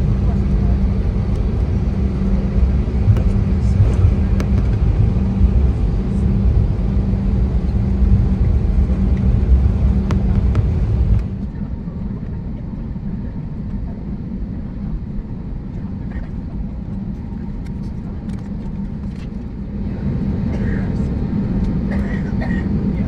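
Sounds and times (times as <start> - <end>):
steady hum: 0.0 - 12.4
vehicle rumble from inside: 0.0 - 12.4.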